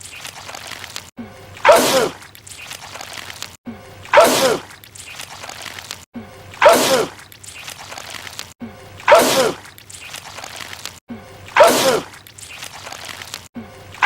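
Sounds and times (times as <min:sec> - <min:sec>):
man sneezing loudly: 0:09.1 - 0:09.6, 0:11.6 - 0:12.1.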